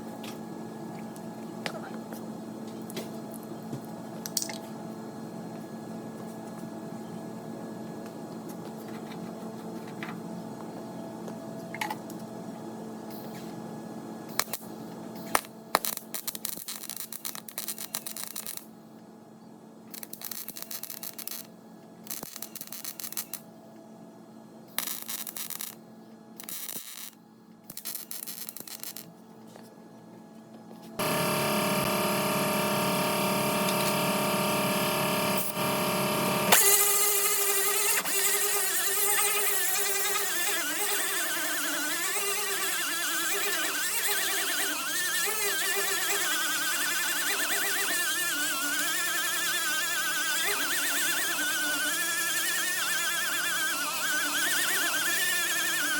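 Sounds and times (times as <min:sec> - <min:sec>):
welding crackle: 0:14.3 - 0:14.6, 0:15.4 - 0:18.7, 0:19.9 - 0:21.5, 0:22.1 - 0:23.4, 0:24.8 - 0:25.8, 0:26.4 - 0:29.1, 0:31.0 - 0:36.8
angle grinder grinding metal: 0:31.0 - 0:55.9.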